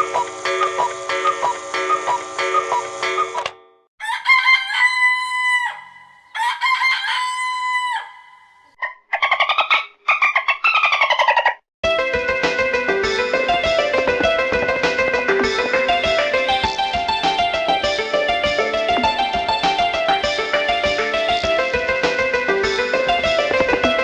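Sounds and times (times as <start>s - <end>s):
rooster crowing: 4.0s - 8.7s.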